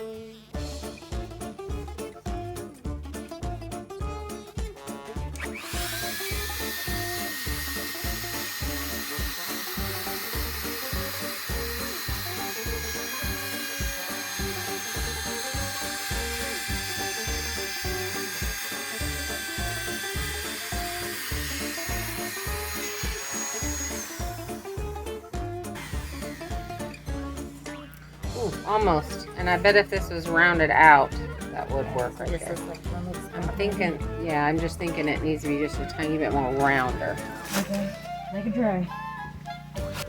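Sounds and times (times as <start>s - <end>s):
background music with steady beat: 0.0s - 40.0s
power tool whining: 5.3s - 38.2s.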